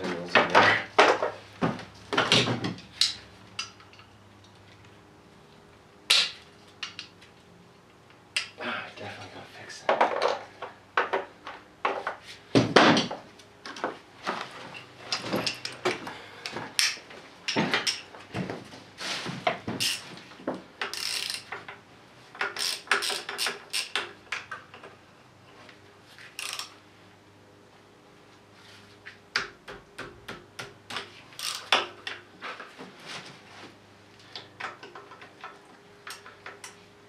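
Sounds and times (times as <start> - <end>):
metal tools clinking: 14.7 - 15.9
socket ratchet clicking: 20.8 - 21.5, 22.4 - 24.1, 26.4 - 26.7, 31.4 - 31.7.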